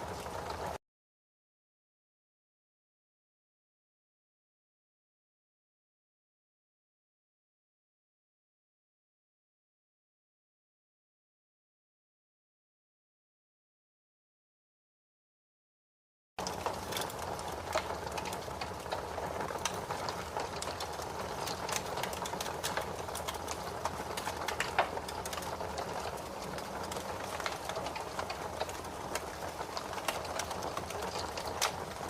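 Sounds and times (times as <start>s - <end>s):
wood fire crackling: 0.0s - 0.8s, 16.4s - 32.0s.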